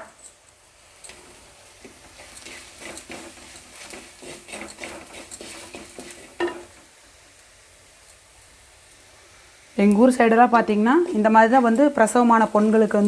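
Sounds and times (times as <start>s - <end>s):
spoon scraping clay pot: 1.1s - 6.7s.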